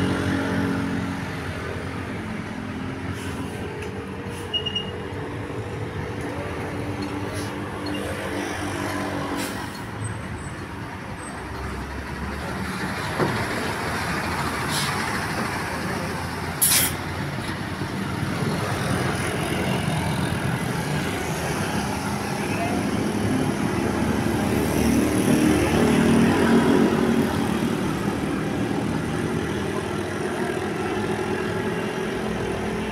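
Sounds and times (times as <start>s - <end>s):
road traffic noise: 0.0s - 32.9s
air brake hiss: 3.1s - 3.6s, 14.7s - 15.0s, 16.6s - 17.0s
bus engine running: 9.3s - 32.9s.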